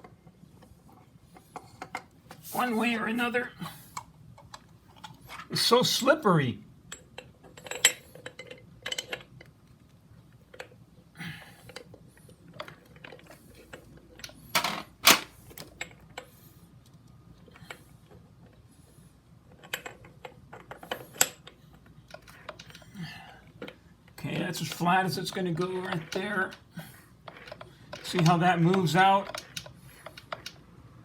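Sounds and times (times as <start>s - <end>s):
metal parts clicking and clinking: 6.9s - 9.5s, 23.6s - 26.6s, 27.2s - 30.6s.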